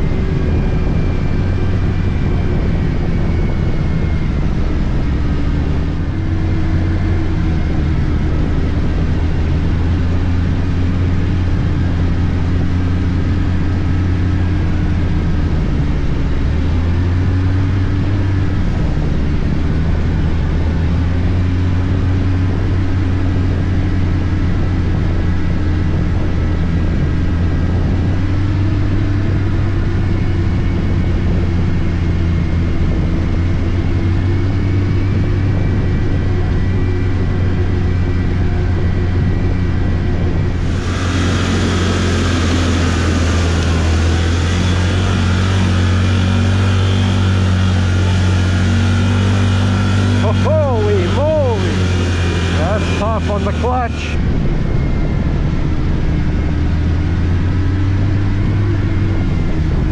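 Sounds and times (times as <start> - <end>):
snowmobile engine running: 0.0 - 59.9
hiss: 40.6 - 44.9.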